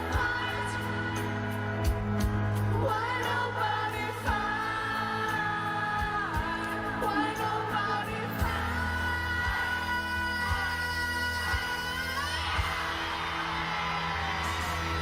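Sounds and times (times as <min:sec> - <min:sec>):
live pop band playing: 0:00.0 - 0:15.0
man singing: 0:02.8 - 0:12.8.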